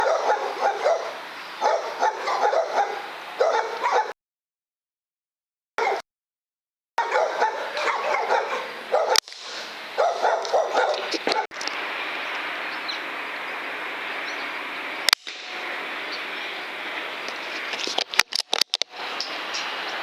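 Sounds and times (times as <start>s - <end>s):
dog barking and yipping: 0.0s - 4.2s, 5.8s - 6.0s, 7.0s - 9.2s, 10.0s - 11.5s
steady hiss: 9.3s - 10.0s.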